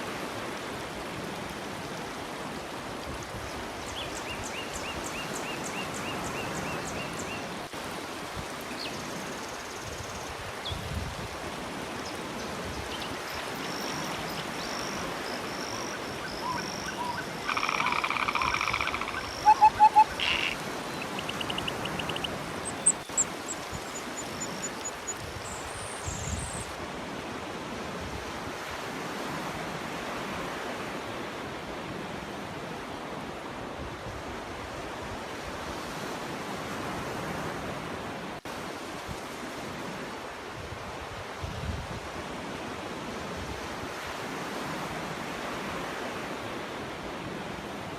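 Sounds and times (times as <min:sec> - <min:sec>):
surf on a shore: 0:00.0 - 0:47.9
high chirps: 0:13.5 - 0:25.0
pulsed animal calls: 0:15.3 - 0:23.2.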